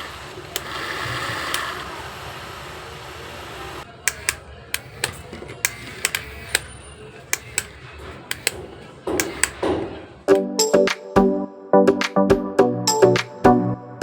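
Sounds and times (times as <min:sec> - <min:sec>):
sharp clicks: 0:04.0 - 0:09.8.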